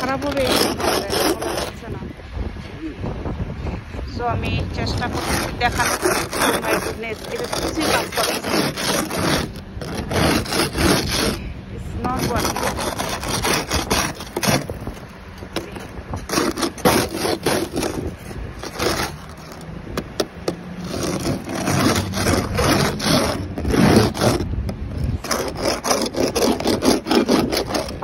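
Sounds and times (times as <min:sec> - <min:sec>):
ice scraper scraping ice: 0:00.0 - 0:02.0, 0:04.7 - 0:28.0.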